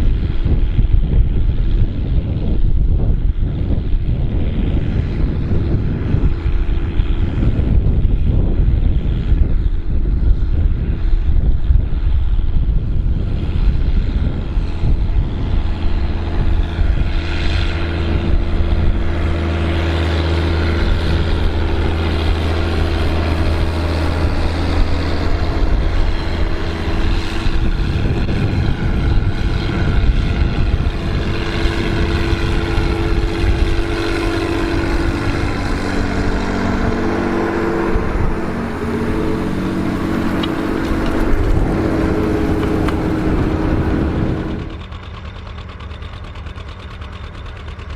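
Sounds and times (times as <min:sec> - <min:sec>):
tractor engine running: 0:00.0 - 0:47.9.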